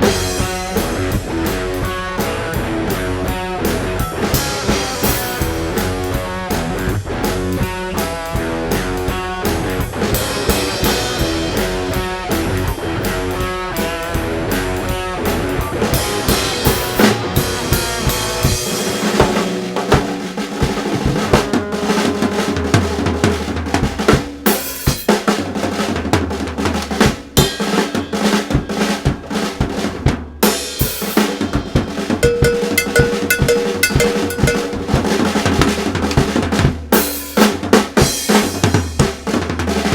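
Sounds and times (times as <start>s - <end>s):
drum kit: 0.0s - 39.9s
pitched instruments: 32.2s - 36.2s.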